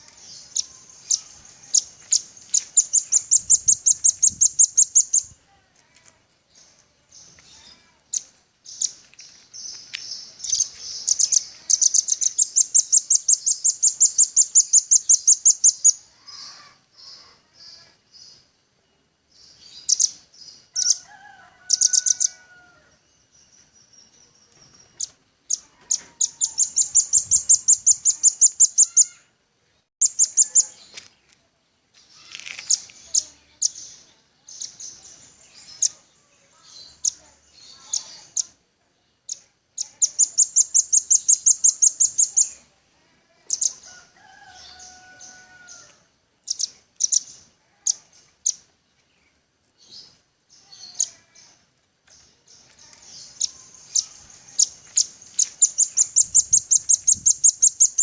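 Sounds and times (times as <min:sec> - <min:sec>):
bird chips and rapid trills: 0:00.2 - 0:05.3, 0:10.2 - 0:16.0, 0:24.7 - 0:29.2, 0:39.3 - 0:42.6, 0:52.2 - 0:58.0.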